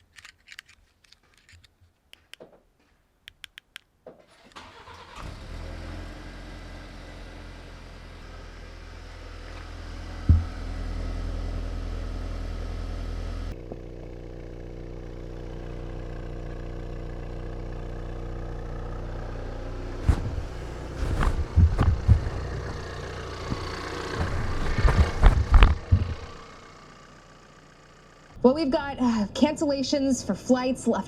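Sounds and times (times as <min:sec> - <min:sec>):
car engine idling: 0:05.8 - 0:28.4
sharp knocks and thumps: 0:10.2 - 0:10.6, 0:20.0 - 0:26.4.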